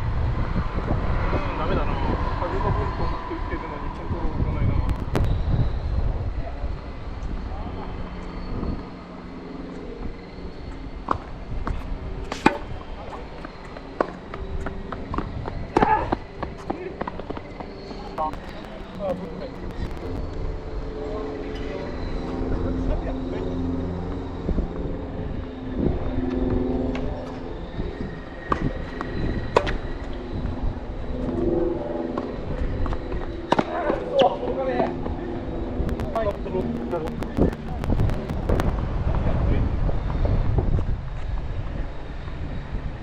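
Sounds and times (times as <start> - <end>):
wind buffeting microphone: 0.0 - 7.5.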